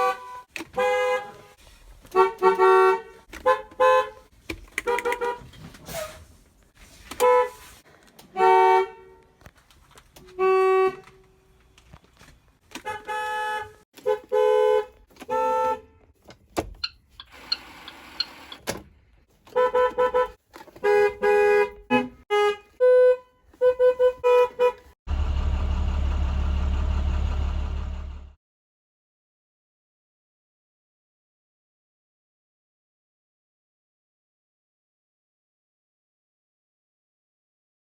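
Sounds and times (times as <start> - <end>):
bus horns honking: 0.0 - 6.1, 7.1 - 9.4, 10.2 - 11.4, 12.7 - 16.1, 19.4 - 28.3
loud low rumble: 25.1 - 28.4.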